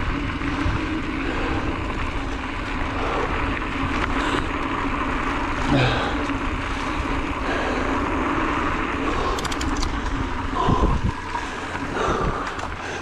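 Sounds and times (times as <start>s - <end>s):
wind rushing over microphone: 0.0s - 4.5s, 8.6s - 12.8s
mountain bike rolling on dirt: 0.0s - 13.0s
sharp clicks: 9.3s - 10.1s.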